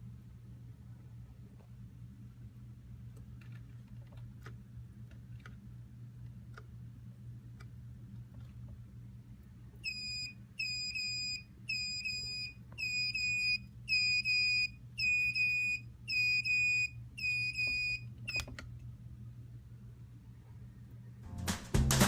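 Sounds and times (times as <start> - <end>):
alarm clock buzzer beeping: 9.8 - 18.0.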